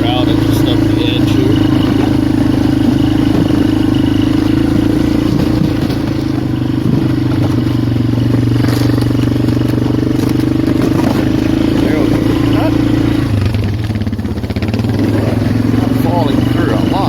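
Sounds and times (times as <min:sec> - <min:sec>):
atv engine running: 0:00.0 - 0:17.0
clatters and scrapes on ice: 0:05.2 - 0:12.5.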